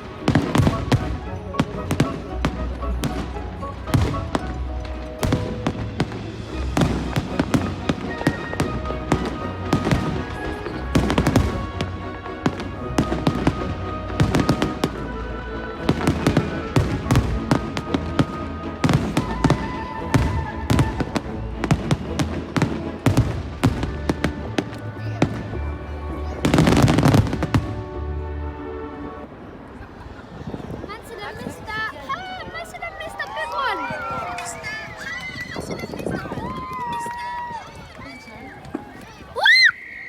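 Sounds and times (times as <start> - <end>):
fireworks bangs and crackles: 0.0 - 28.3, 33.2 - 38.9
music playing: 0.0 - 29.6.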